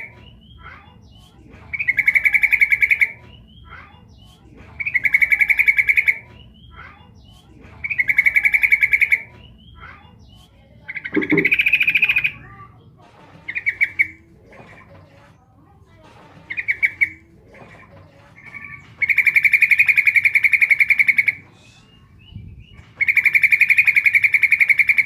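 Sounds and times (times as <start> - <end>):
bulbul chattering call: 10.9 - 12.4.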